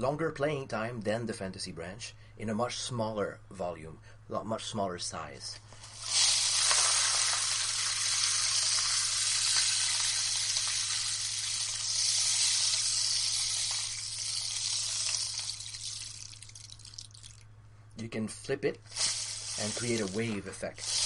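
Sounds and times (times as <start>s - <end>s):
rainstick pouring hiss: 5.7s - 17.4s, 18.8s - 21.0s.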